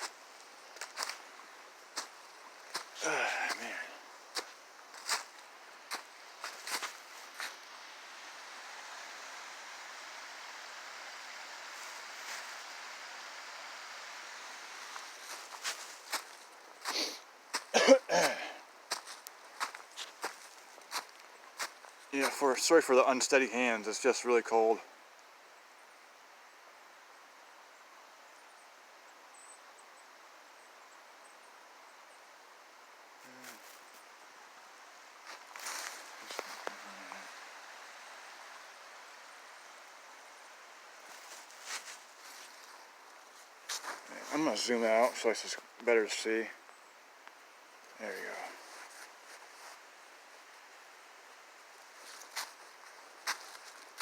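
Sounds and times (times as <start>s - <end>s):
distant river rushing: 0.0s - 17.0s, 35.3s - 43.1s.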